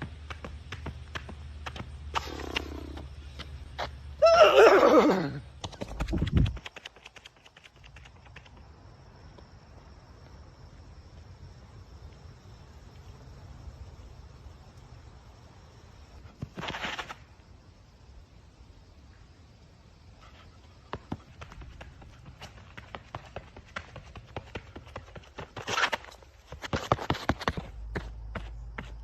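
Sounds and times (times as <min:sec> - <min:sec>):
hooves clip-clopping: 0:00.0 - 0:04.0, 0:05.6 - 0:10.4, 0:20.3 - 0:29.0.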